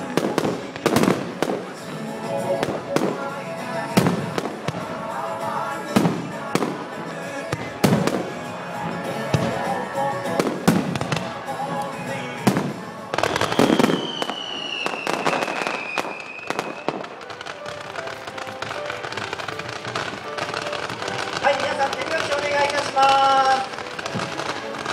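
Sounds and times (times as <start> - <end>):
fireworks bursting: 0.0 - 24.9
fireworks crackling: 0.0 - 24.9
recorded music: 0.0 - 24.9
falling firework whistle: 13.2 - 18.1.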